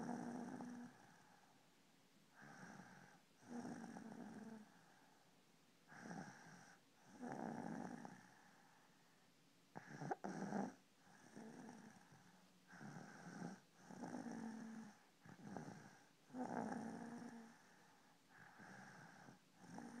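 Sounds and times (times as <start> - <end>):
rough rattly snoring: 0.0 - 1.0, 2.4 - 4.6, 5.9 - 8.3, 9.8 - 17.7, 18.3 - 20.0.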